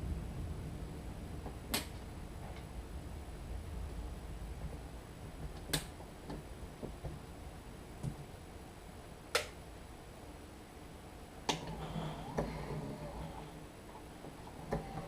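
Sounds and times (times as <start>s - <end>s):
low hum: 0.0s - 15.0s
ventilator clicking: 1.4s - 2.7s, 3.9s - 7.3s, 8.0s - 8.4s, 9.2s - 9.6s, 11.4s - 15.0s.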